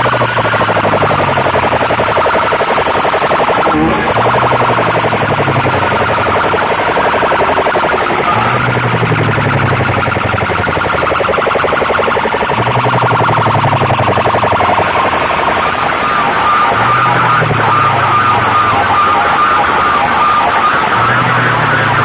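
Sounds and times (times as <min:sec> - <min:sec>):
pulsing electronic siren tone: 0:00.0 - 0:22.0
deep bass note: 0:03.6 - 0:15.3.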